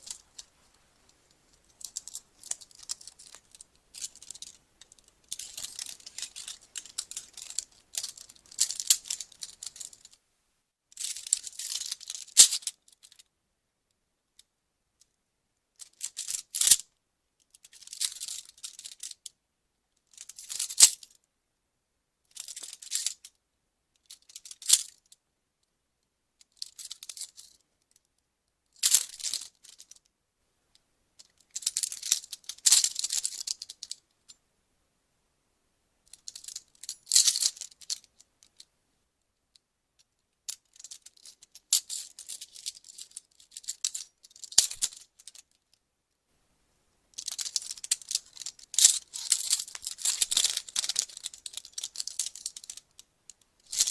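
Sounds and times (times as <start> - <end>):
handcuffs ratcheting and rattling: 1.8 - 10.1, 31.2 - 34.0, 36.1 - 38.6, 40.5 - 45.5, 47.2 - 53.0, 53.7 - 53.9.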